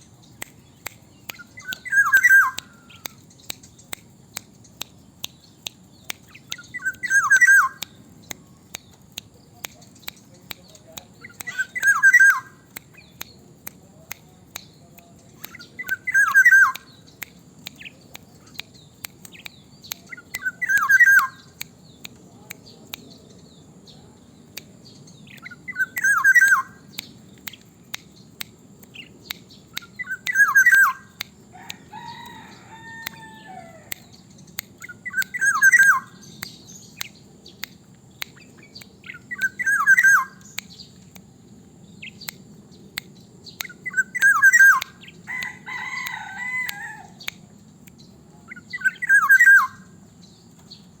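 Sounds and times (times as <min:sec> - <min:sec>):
faint clicks: 0:00.0 - 0:23.5, 0:24.5 - 0:49.3
longer bird call: 0:00.4 - 0:03.6, 0:05.3 - 0:08.0, 0:11.2 - 0:12.7, 0:15.4 - 0:17.2, 0:17.8 - 0:21.6, 0:25.2 - 0:27.0, 0:29.7 - 0:37.2, 0:38.4 - 0:41.0, 0:43.5 - 0:47.4, 0:48.4 - 0:49.9.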